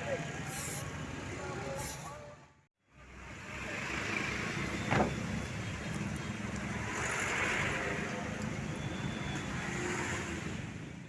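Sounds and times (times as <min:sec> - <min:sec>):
highway traffic passing: 0:00.0 - 0:11.0.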